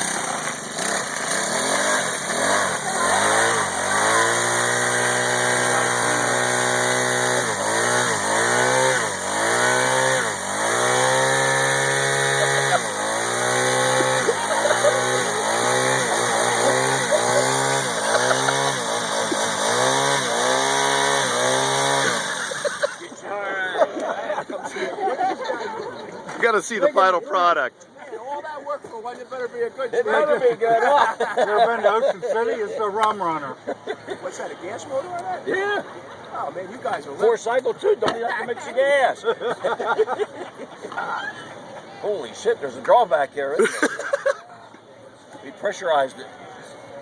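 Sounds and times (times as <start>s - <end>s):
small engine revving: 0.0s - 23.1s.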